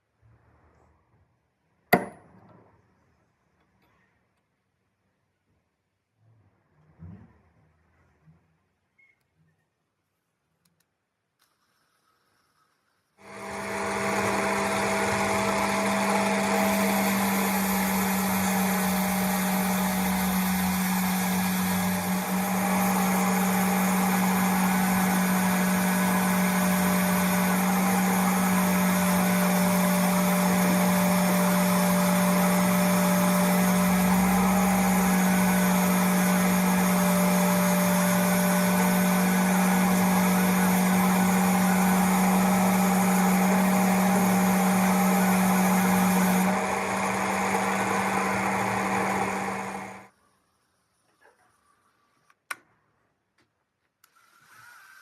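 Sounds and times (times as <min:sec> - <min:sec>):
electric power tool motor humming: 0:13.2 - 0:50.1.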